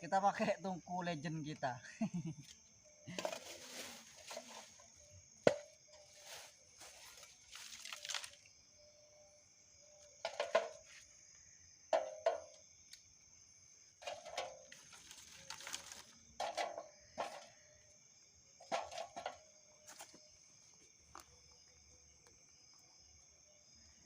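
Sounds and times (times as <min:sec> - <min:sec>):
high insect drone: 0:00.0 - 0:24.0
camp gear knocks and rustles: 0:03.1 - 0:08.2, 0:10.1 - 0:11.0, 0:11.9 - 0:12.7, 0:14.0 - 0:17.5, 0:18.6 - 0:22.4.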